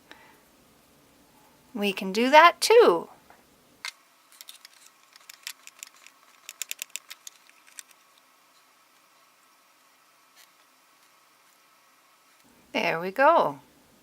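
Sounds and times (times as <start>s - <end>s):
plastic tools clicking and tapping: 4.4s - 8.0s.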